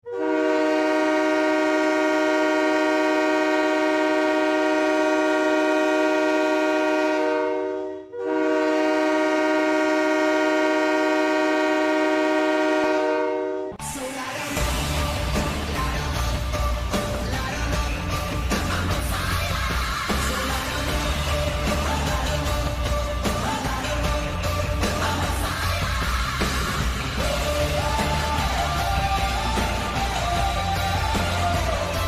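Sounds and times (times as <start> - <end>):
goal horn blasts: 0.0 - 13.8
music: 13.8 - 32.0.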